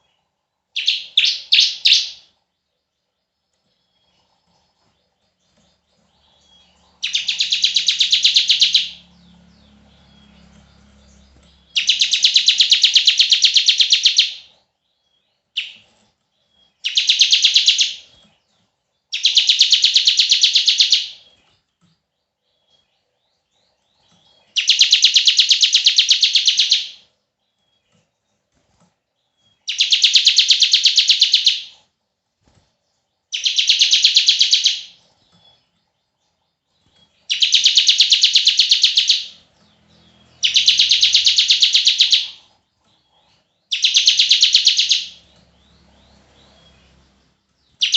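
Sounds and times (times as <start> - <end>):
bird rattling trill: 6.3 - 9.4, 10.0 - 14.5, 16.7 - 18.2, 19.1 - 21.4, 24.2 - 27.0, 33.3 - 35.0, 37.0 - 42.5, 43.7 - 47.9.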